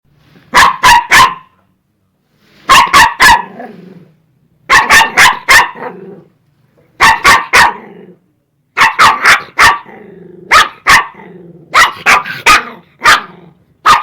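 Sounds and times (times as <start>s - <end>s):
dog barking angrily: 0.5s - 1.6s, 2.6s - 3.9s, 4.6s - 6.3s, 7.0s - 14.0s
dog growling: 5.8s - 6.3s, 7.7s - 8.2s, 9.8s - 10.5s, 11.2s - 11.8s.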